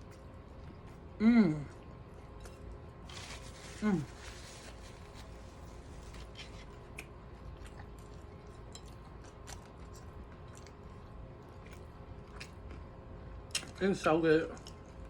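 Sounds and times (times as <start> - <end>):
mouth chewing and smacking: 6.2 - 12.9.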